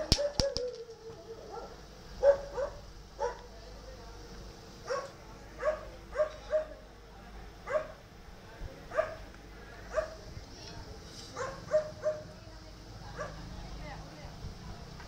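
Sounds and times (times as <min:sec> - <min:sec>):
dog barking: 0:01.4 - 0:03.4, 0:04.8 - 0:06.8, 0:07.7 - 0:08.0, 0:08.9 - 0:09.2, 0:09.9 - 0:10.2, 0:11.4 - 0:12.3, 0:13.2 - 0:13.5.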